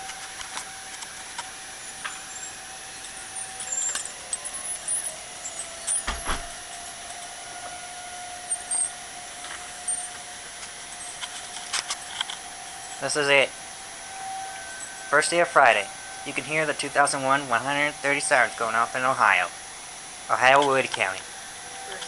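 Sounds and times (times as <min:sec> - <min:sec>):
distant warning sirens: 0:00.0 - 0:22.0
dull thump: 0:06.1 - 0:06.6.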